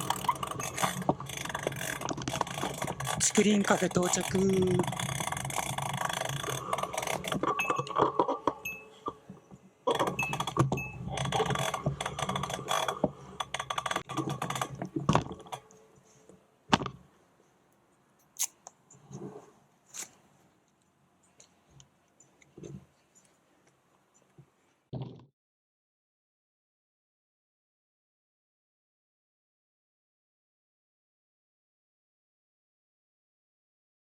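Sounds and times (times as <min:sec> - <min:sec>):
scattered clicks and knocks: 0:00.0 - 0:15.8.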